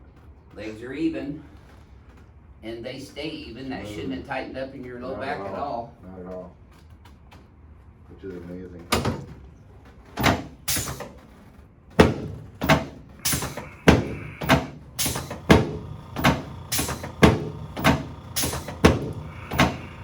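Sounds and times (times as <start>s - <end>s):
chiropractic adjustment knocks: 12.0s - 20.0s.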